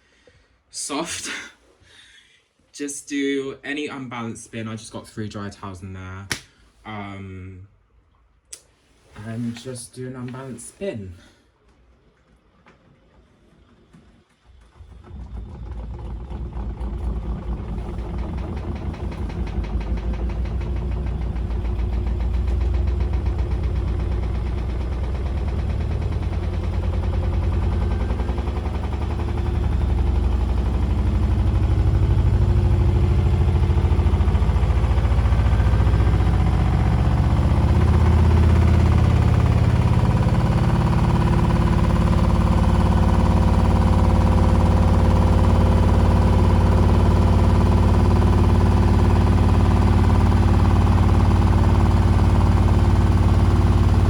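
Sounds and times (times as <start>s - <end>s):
washing machine spinning: 13.8s - 54.0s
drum rumbling and knocking: 14.9s - 54.0s.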